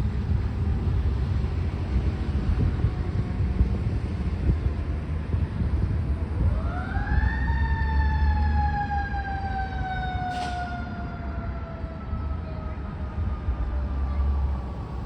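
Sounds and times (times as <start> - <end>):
low rumble of fire truck: 0.0 - 15.0
fire truck siren: 6.2 - 15.0.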